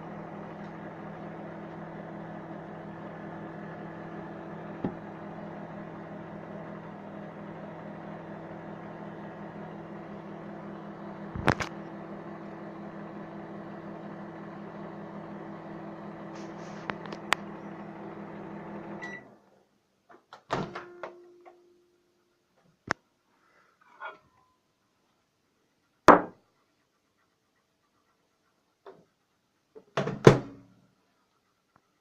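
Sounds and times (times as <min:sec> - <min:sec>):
microwave oven humming: 0:00.0 - 0:19.6
knock: 0:26.1 - 0:26.4.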